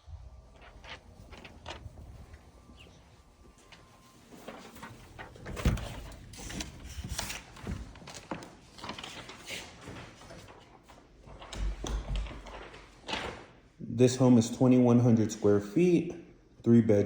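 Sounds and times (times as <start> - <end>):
door being opened: 0.5 - 8.0.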